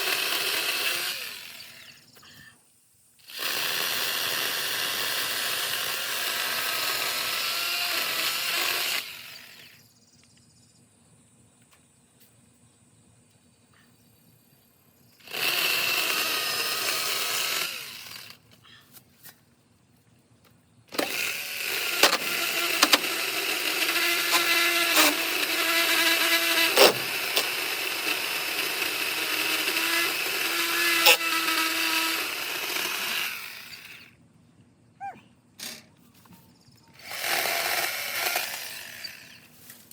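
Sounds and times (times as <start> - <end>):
electric chainsaw whining: 0.0 - 2.2, 3.2 - 9.8, 15.2 - 18.4, 20.9 - 34.2, 37.0 - 39.6.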